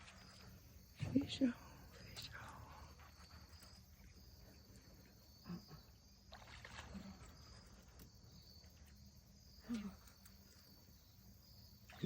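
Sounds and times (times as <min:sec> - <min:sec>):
faint insect trilling: 0:00.0 - 0:12.0.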